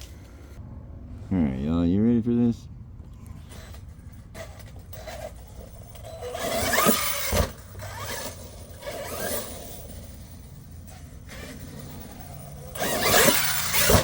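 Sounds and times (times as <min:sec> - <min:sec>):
rc car motor whining: 0:03.1 - 0:14.0
rc car landing thud: 0:03.5 - 0:10.1, 0:10.9 - 0:14.0.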